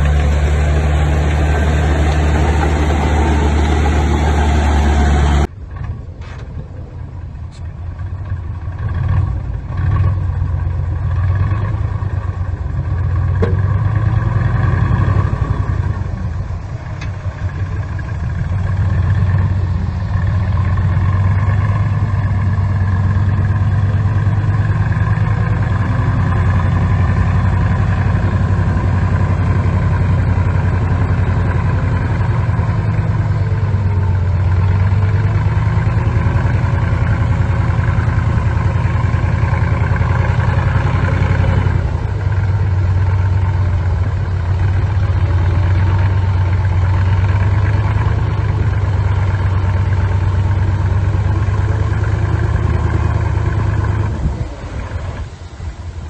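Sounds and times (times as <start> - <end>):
bulldozer diesel engine drone: 0.0 - 56.0.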